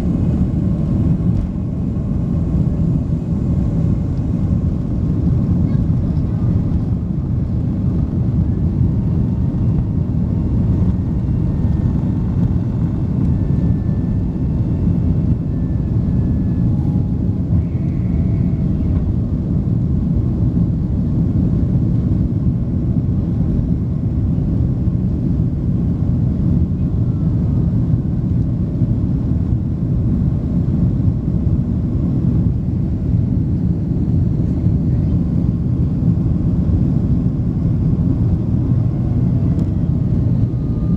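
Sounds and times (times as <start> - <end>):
jet airliner engines rumbling: 0.0 - 40.9.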